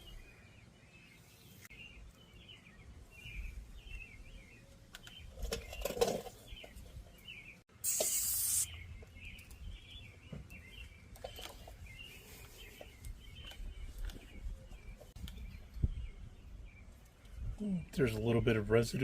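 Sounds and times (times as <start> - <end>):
birds chirping: 0.0 - 19.0
aerosol can spray hiss: 7.8 - 8.7.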